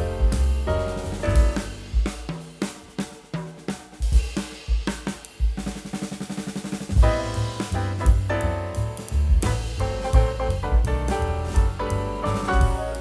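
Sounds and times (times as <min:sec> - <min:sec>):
piano: 0:00.0 - 0:04.0, 0:06.7 - 0:13.0
jazzy drum kit: 0:00.0 - 0:13.0.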